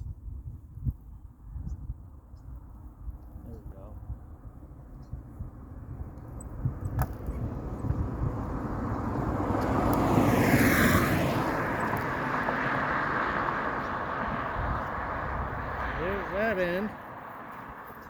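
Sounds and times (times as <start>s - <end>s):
vehicle driving past: 7.3s - 18.0s.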